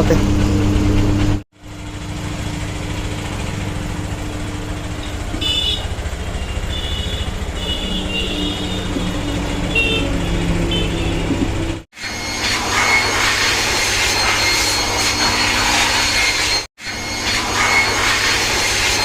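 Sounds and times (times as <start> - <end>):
motorcycle engine idling: 1.6 - 11.6.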